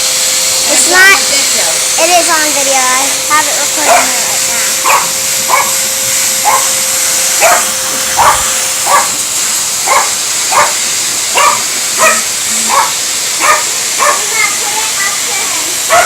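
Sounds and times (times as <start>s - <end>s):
vacuum cleaner running: 0.0s - 16.0s
dog barking: 3.8s - 5.8s, 6.4s - 6.8s, 7.4s - 9.2s, 9.8s - 14.4s.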